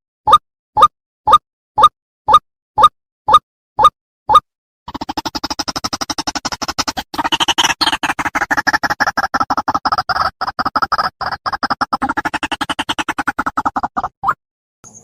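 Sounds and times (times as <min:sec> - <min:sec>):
bird croaking call: 0:06.6 - 0:13.2.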